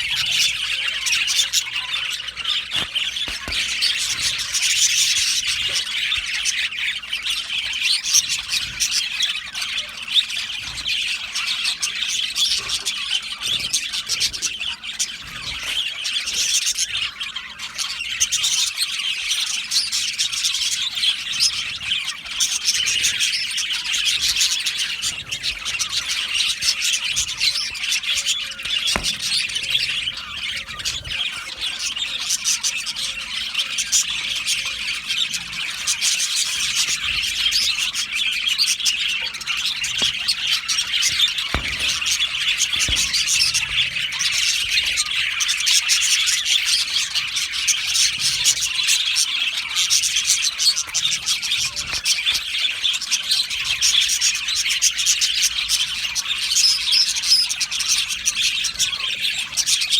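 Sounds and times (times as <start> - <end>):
budgerigars chirping and squawking: 0.0 - 59.9.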